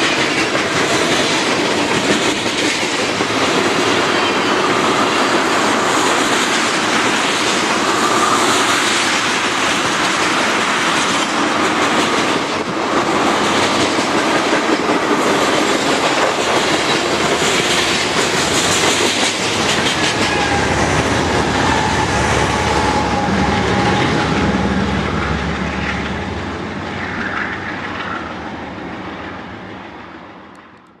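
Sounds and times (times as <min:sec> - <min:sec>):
train wheels clattering over rail joints: 0:00.0 - 0:22.0.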